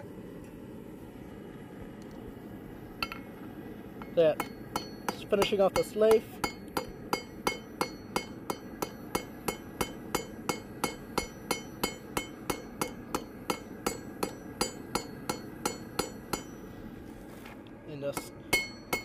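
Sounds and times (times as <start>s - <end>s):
hammer clanging on anvil: 4.0s - 16.6s, 18.2s - 19.0s.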